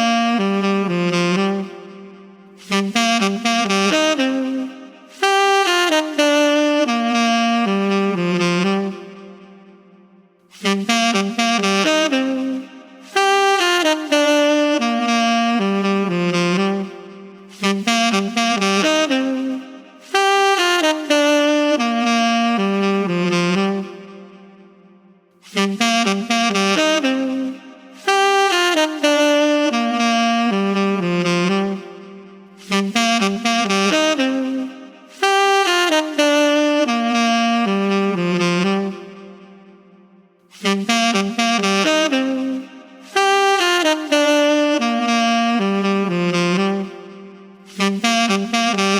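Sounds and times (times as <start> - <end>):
solo saxophone: 0.0 - 48.9.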